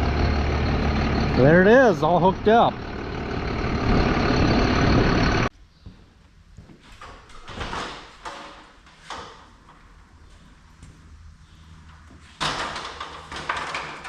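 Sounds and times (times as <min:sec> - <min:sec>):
engine running loudly: 0:00.0 - 0:05.5.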